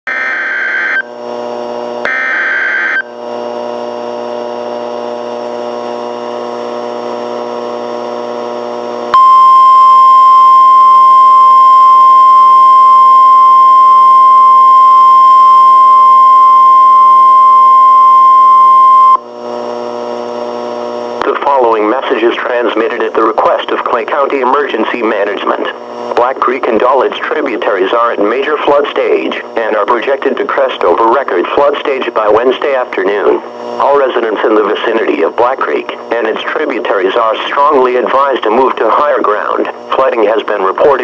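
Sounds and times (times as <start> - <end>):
steady buzzing hum: 0.1 - 41.0
steady attention tone: 9.1 - 19.2.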